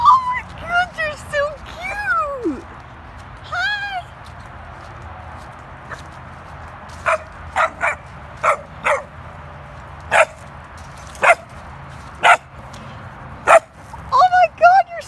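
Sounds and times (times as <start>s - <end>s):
puppies yipping: 7.0s - 9.2s, 10.1s - 10.4s, 11.2s - 11.6s, 12.2s - 12.5s, 13.4s - 13.8s.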